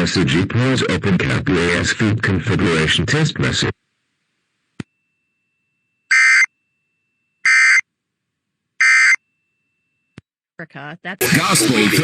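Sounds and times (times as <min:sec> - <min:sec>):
digital data tone bursts: 0:06.1 - 0:06.5, 0:07.4 - 0:07.8.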